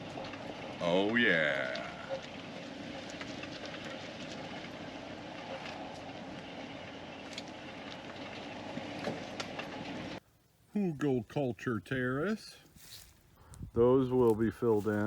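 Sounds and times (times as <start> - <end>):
vehicle running: 0.0 - 10.2.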